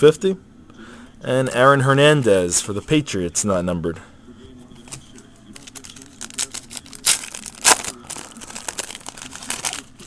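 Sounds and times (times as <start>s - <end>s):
cards rustling and shuffling: 4.8s - 10.0s.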